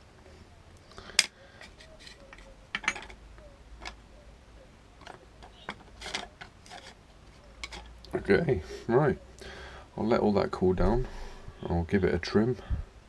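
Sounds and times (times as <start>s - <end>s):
pewter pieces clicking: 5.0s - 7.0s, 7.6s - 7.9s.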